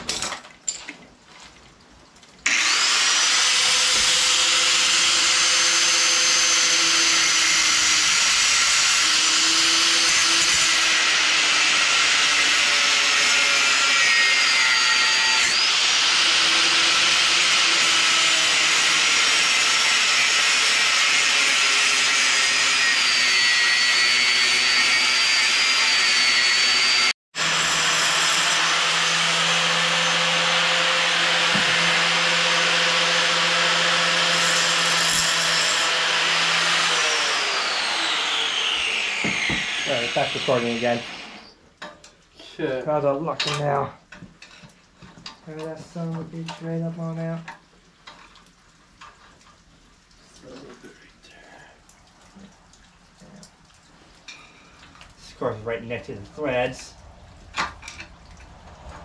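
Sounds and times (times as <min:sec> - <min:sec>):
angle grinder grinding metal: 0:02.5 - 0:41.6.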